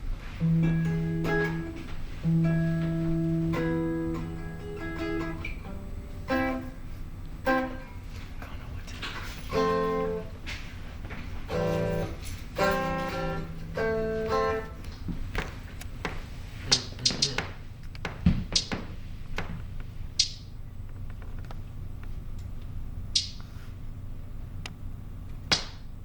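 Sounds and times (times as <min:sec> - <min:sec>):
guitar being plucked: 0:00.4 - 0:15.1.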